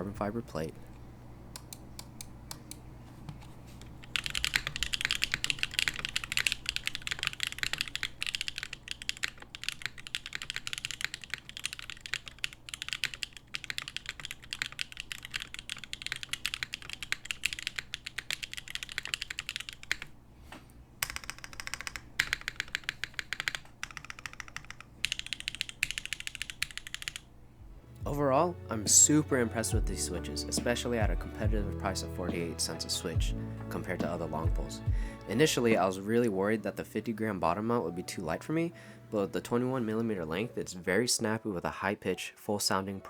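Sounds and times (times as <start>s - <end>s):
mechanical keyboard typing: 4.0s - 20.1s, 21.0s - 27.3s.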